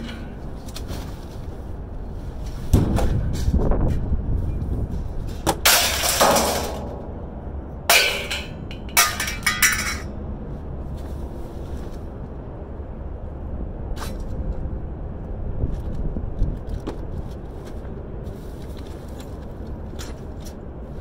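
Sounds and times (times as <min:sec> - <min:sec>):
scrap metal clanking and crashing: 0:05.4 - 0:07.2, 0:07.9 - 0:10.1.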